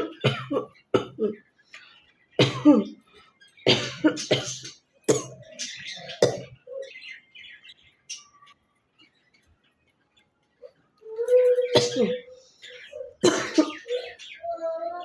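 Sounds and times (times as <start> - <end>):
woman coughing: 0.0 - 1.4, 2.4 - 3.0, 3.7 - 5.4, 11.7 - 12.2, 13.2 - 14.0.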